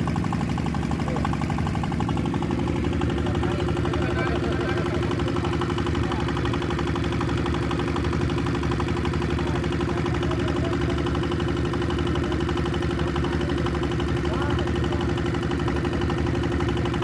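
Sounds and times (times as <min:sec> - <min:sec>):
engine running steadily: 0:00.0 - 0:17.0
faint voices: 0:02.2 - 0:07.2.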